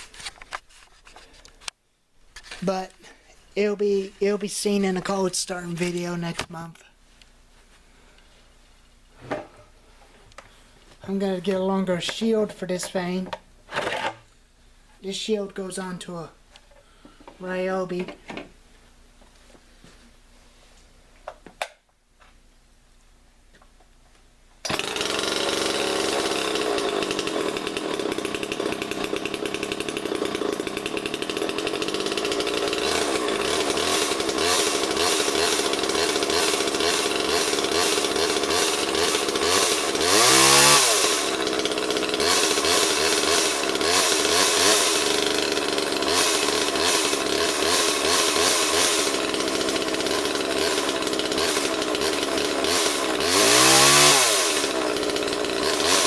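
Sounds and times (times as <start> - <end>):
chainsaw idling and revving: 24.7 - 56.0.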